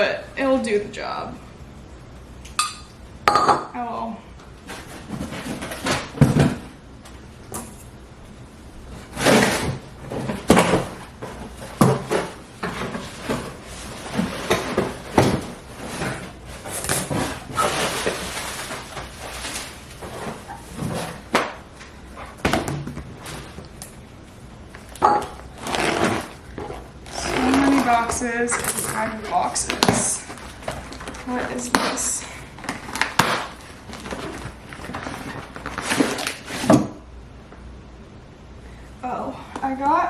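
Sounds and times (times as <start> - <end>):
packaging rustling and crinkling: 4.6 - 6.7, 9.0 - 24.0, 24.6 - 36.8.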